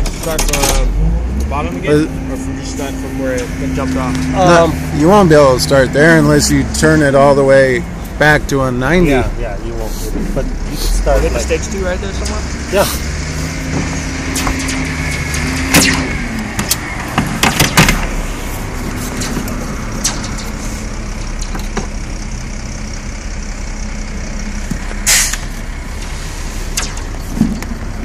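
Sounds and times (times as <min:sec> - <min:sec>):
roof seamer motor hum: 0:00.0 - 0:28.0
metallic knocks and clanks: 0:13.6 - 0:18.2, 0:19.0 - 0:22.0.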